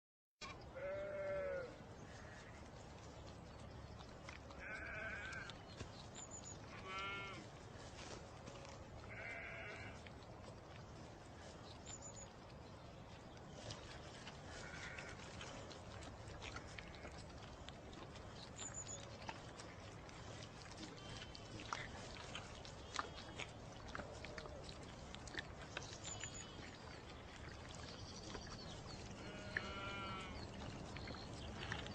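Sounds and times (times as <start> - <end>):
goat kid bleating: 0.8 - 2.4, 4.6 - 5.6, 6.7 - 7.5, 9.1 - 10.0, 14.6 - 15.2, 29.2 - 30.4.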